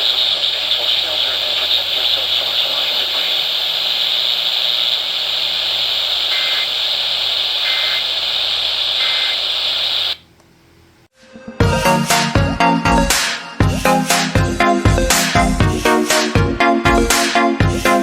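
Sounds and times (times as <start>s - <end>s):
radio static hiss: 0.0s - 10.2s.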